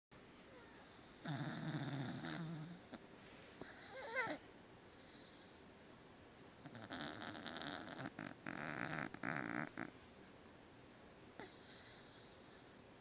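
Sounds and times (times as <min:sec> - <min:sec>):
dog snoring: 0:00.4 - 0:03.0, 0:03.6 - 0:04.4, 0:06.6 - 0:10.0, 0:11.4 - 0:12.7.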